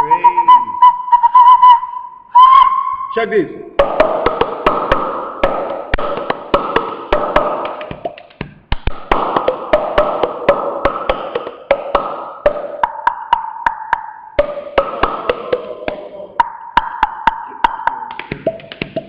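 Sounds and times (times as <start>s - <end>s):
held voiced tone: 0.0s - 0.8s.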